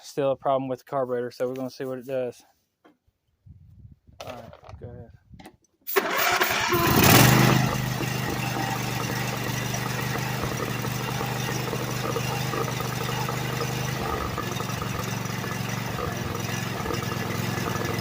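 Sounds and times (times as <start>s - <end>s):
small engine starting and idling: 5.9s - 18.0s.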